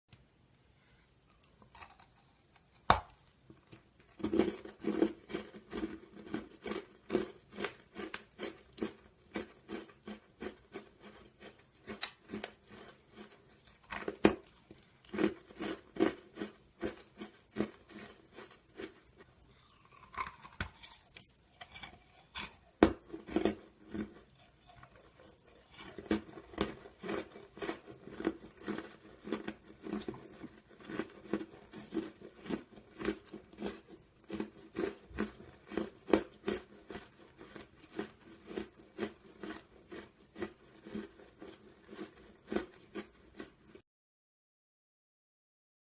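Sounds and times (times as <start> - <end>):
person chewing crunchy pieces: 1.3 - 43.8
sharp biting cracks: 19.8 - 24.1.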